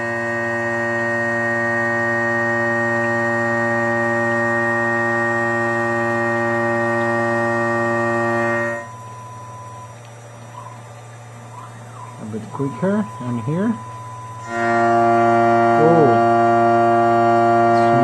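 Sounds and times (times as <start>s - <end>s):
faint hum: 0.0s - 18.0s
machine motors whining: 0.0s - 18.0s.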